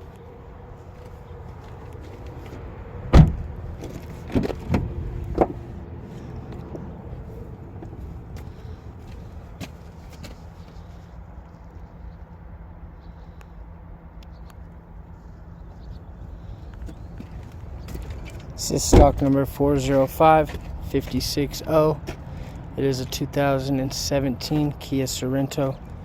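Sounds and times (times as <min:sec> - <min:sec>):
car door slam: 0:03.1 - 0:03.5, 0:18.9 - 0:19.3.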